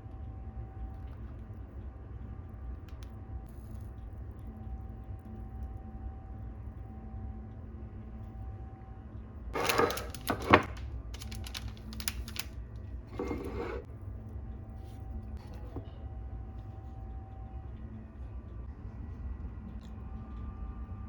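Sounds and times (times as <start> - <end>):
object scraping: 13.1 - 13.9.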